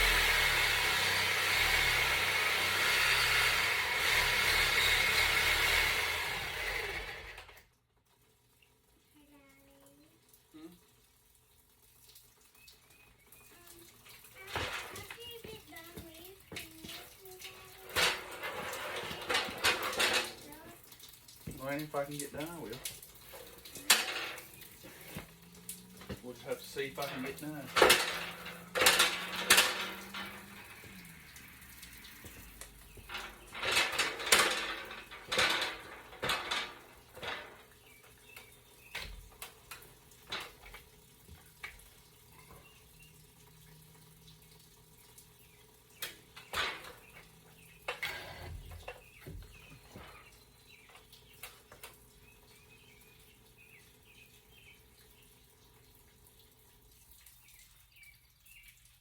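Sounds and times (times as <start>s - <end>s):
water dripping and trickling: 0.0s - 6.8s, 7.4s - 59.0s
metallic clanks on drain pipe: 13.6s - 55.2s.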